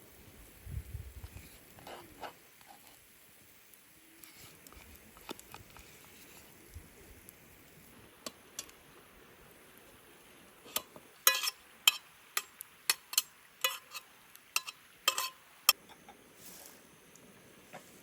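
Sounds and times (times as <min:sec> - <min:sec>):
dishes and cutlery clinking: 0:14.6 - 0:15.4.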